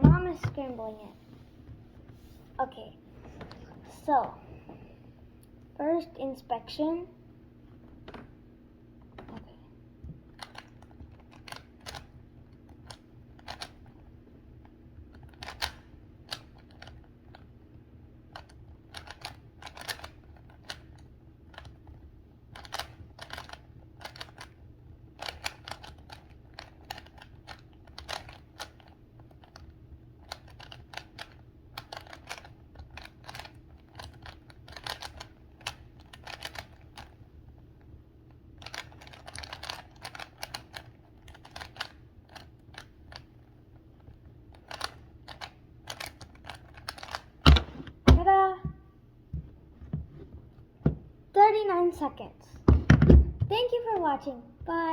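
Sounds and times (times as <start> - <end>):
faint steady hum: 0.0 - 54.9
puzzle cube clicking: 10.3 - 14.0, 15.1 - 17.4, 18.3 - 22.0, 22.6 - 24.6, 25.2 - 37.2, 38.6 - 43.3, 44.0 - 47.7.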